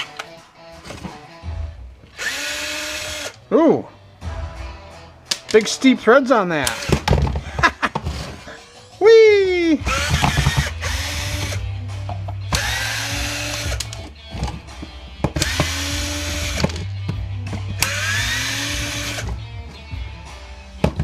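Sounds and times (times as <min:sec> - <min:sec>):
background music with bass: 0:00.0 - 0:21.0
power drill backing out screws: 0:15.4 - 0:16.8.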